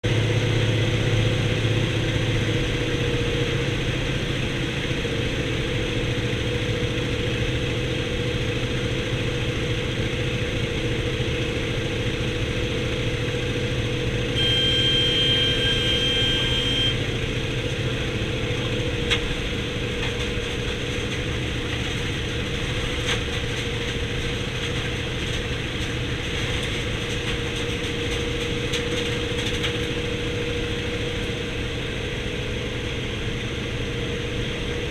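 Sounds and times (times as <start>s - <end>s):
radial aircraft engine droning: 0.0s - 34.9s
high steady beep: 14.4s - 17.0s.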